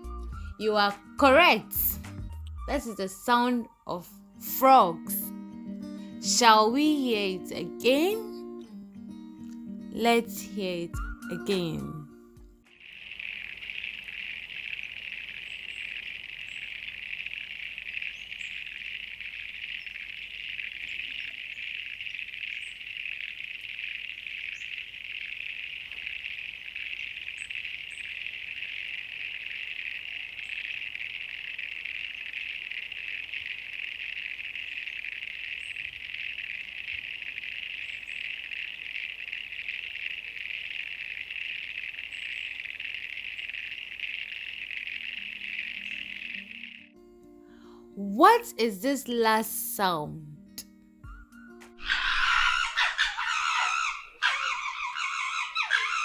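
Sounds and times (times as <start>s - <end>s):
frogs trilling: 12.7s - 47.0s, 51.8s - 56.0s.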